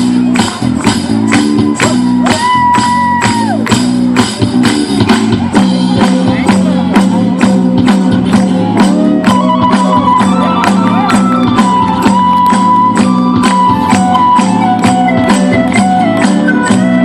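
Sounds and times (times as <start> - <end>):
repeating bass line: 0.0 - 17.0
held melody notes: 5.5 - 17.0.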